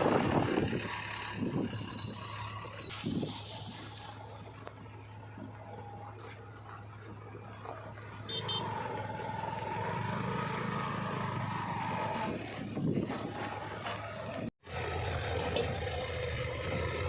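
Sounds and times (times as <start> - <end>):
heavy diesel machinery running: 0.0 - 17.0.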